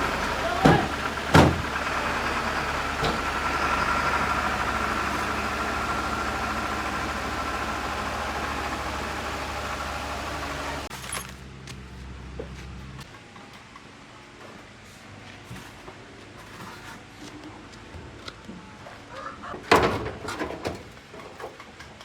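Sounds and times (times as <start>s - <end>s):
vehicle engine running: 0.0s - 10.9s.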